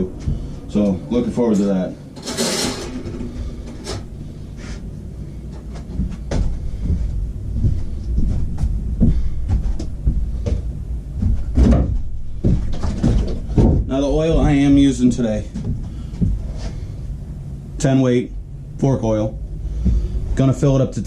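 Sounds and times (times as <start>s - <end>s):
low handling rumble: 0.0s - 21.0s.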